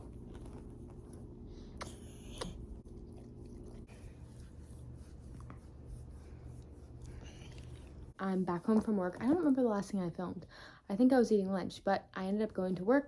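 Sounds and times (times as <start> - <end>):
faint chewing: 0.0 - 8.2.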